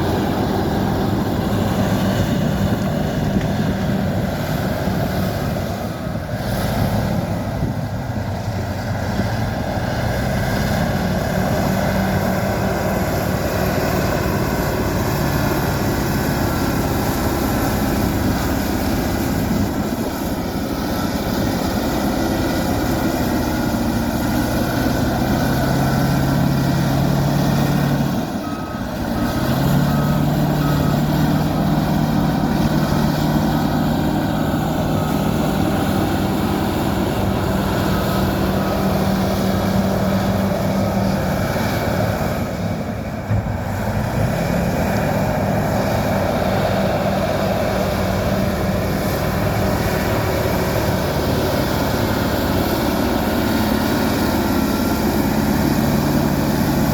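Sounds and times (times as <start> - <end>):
bulldozer diesel engine running: 0.0 - 56.9
reversing alarm beeping: 10.6 - 40.5.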